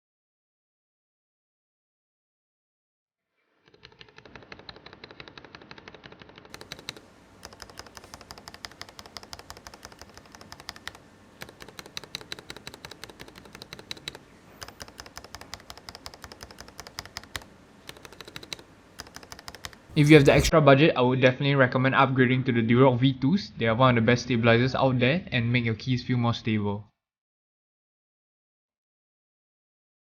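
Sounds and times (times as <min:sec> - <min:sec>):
mechanical keyboard keystrokes: 0:04.3 - 0:20.5.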